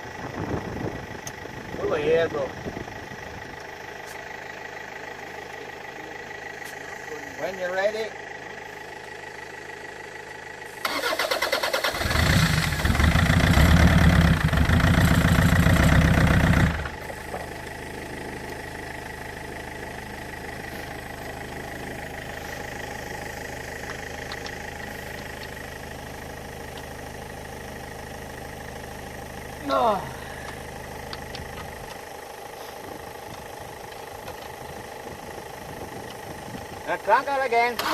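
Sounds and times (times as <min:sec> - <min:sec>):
starter motor cranking: 0:10.8 - 0:17.7, 0:37.5 - 0:37.9
steady background hum: 0:16.7 - 0:37.7.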